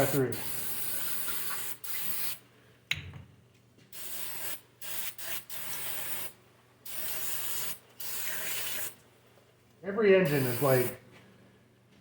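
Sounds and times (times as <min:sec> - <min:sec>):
aerosol spray hissing: 0:00.0 - 0:02.4, 0:04.0 - 0:09.0, 0:10.2 - 0:11.0.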